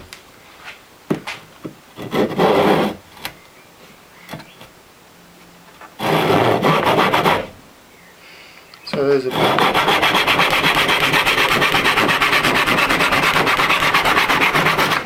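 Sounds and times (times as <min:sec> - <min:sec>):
hand tool rasping wood: 0:02.0 - 0:03.0, 0:05.9 - 0:07.6, 0:08.9 - 0:15.0.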